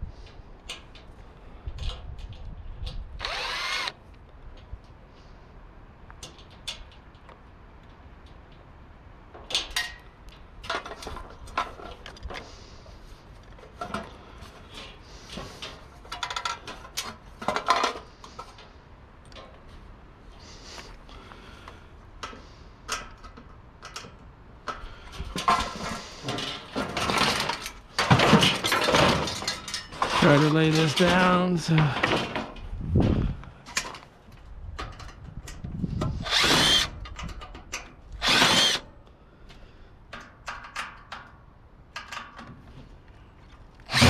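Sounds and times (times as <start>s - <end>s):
clattering and scraping of parts: 6.2s - 44.0s
metal parts clinking and clattering: 25.4s - 32.6s.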